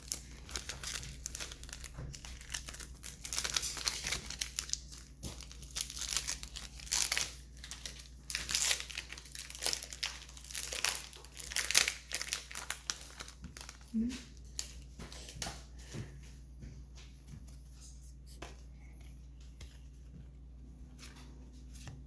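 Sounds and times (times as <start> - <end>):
foil wrappers crinkling: 0.0 - 15.4.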